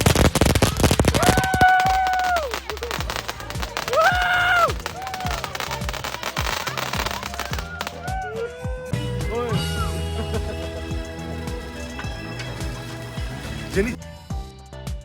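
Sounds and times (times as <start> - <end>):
fireworks popping and crackling: 0.0 - 8.2
music with long held notes: 0.0 - 15.0.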